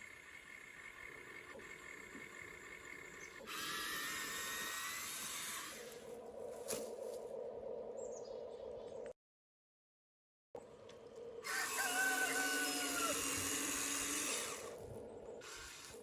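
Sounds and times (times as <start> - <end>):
toy excavator motors whining: 0.0 - 6.2, 11.4 - 16.0.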